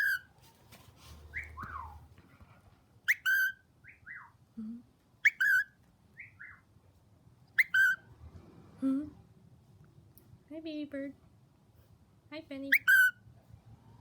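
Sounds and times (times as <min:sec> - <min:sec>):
cockatiel contact call: 0:00.0 - 0:02.1
soft falling whistles: 0:01.3 - 0:02.0.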